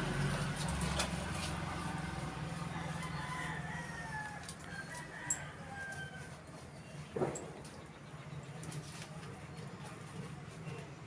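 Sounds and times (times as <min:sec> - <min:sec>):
rooster crowing: 0:02.4 - 0:06.5.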